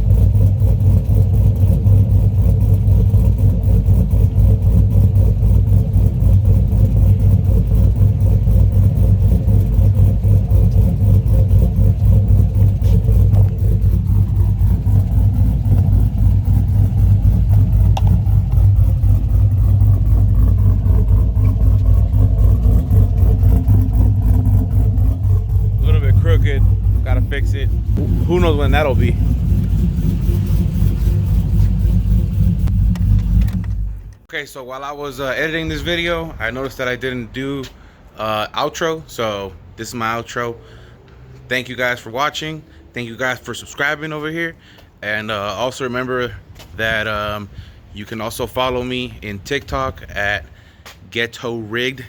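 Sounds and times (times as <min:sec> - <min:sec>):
deep engine exhaust note: 0:00.0 - 0:34.2, 0:35.0 - 0:38.1.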